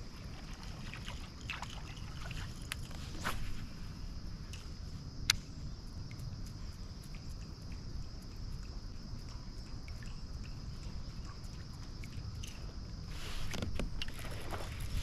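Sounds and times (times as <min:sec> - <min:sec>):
insects trilling: 0:00.0 - 0:15.0
faint ticks: 0:04.5 - 0:12.7.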